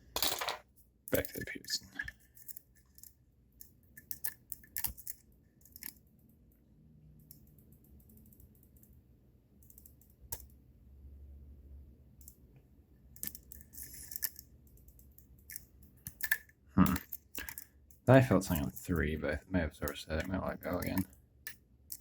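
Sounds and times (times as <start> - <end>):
lock pick scrape: 13.2 - 14.5.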